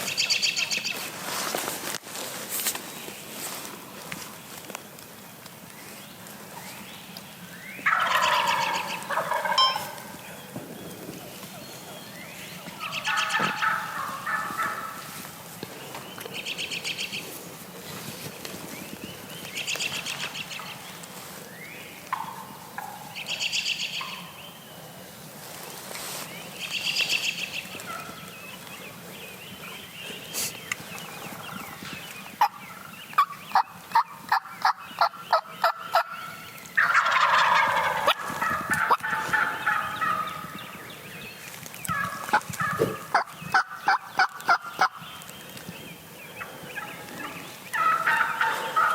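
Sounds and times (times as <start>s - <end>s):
sharp bird calls: 0.0s - 1.7s, 5.1s - 17.4s, 18.2s - 24.9s, 25.6s - 48.9s
turkeys gobbling: 7.8s - 12.0s, 12.6s - 17.2s, 22.0s - 24.5s, 25.7s - 28.7s, 30.3s - 40.9s, 41.8s - 45.1s, 46.1s - 48.9s.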